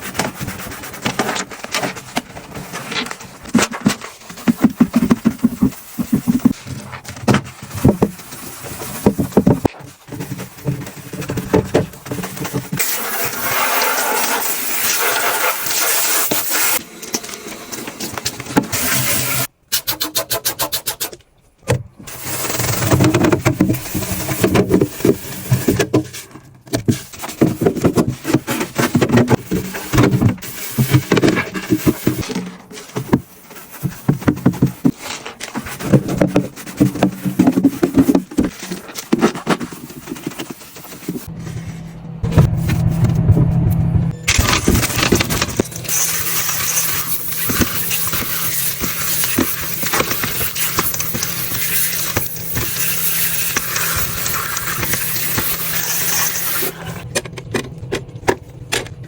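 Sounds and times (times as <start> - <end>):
rubbing and scrubbing: 0.0 - 16.8, 22.0 - 59.0
hiss: 12.8 - 16.8, 18.7 - 21.1, 29.8 - 31.1, 45.9 - 57.0.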